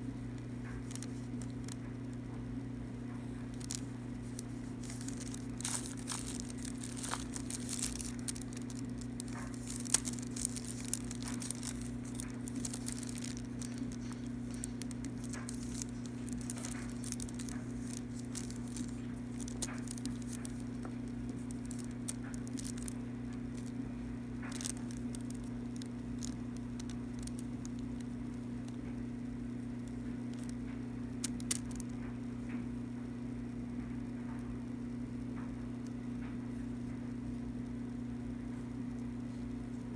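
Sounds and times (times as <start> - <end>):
small clicks and crackles: 0.0 - 34.6
steady low hum: 0.0 - 39.9.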